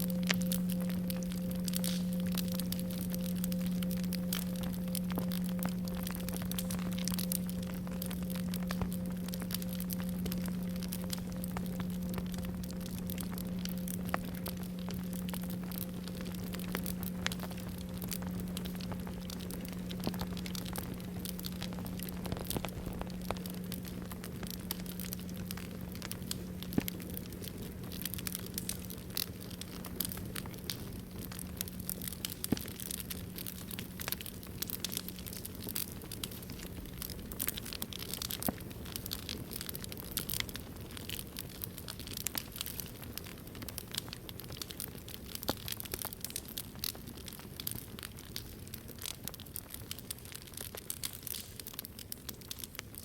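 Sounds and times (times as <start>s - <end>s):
singing bowl ringing: 0.0s - 28.3s
campfire crackling: 0.0s - 53.0s.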